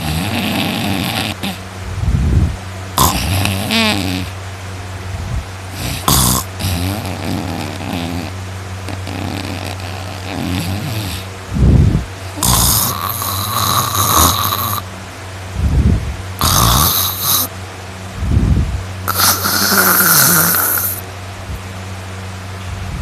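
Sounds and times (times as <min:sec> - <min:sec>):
loud human snoring: 0:00.0 - 0:01.6, 0:03.0 - 0:04.3, 0:05.7 - 0:11.3, 0:12.3 - 0:14.9, 0:16.4 - 0:17.5, 0:19.0 - 0:21.0
steady low hum: 0:00.0 - 0:23.0.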